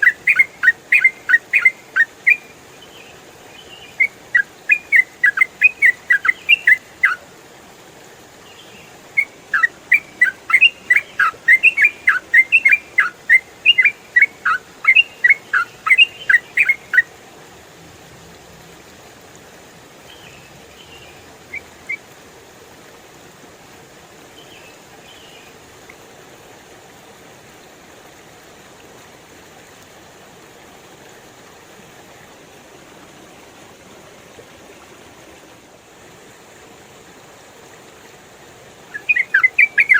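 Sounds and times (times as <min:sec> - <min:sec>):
bird singing chirped whistles: 0:00.0 - 0:07.2, 0:08.6 - 0:17.1, 0:38.9 - 0:39.9
running water hiss: 0:00.0 - 0:39.9.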